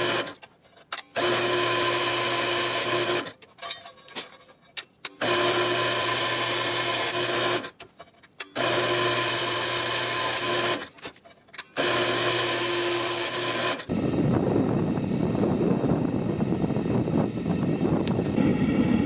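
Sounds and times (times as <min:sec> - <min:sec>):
electric drill running: 0:01.2 - 0:03.3, 0:05.2 - 0:07.7, 0:08.6 - 0:10.9, 0:11.8 - 0:19.0.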